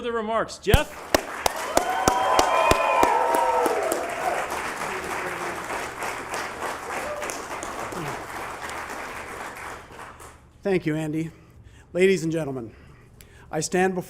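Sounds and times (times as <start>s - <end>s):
audience applauding: 1.0s - 10.4s
audience cheering: 1.1s - 9.3s.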